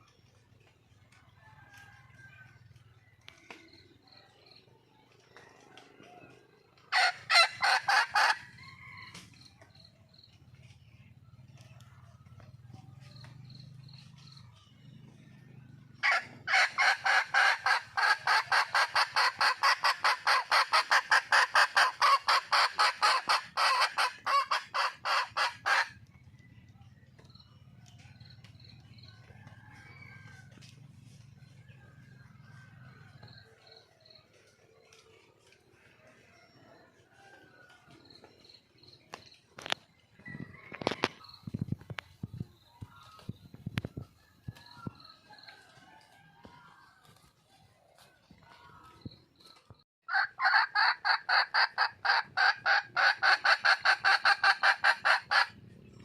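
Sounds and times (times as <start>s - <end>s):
junglefowl hen calling: 5.3s - 9.9s, 16.0s - 26.1s, 39.1s - 55.8s.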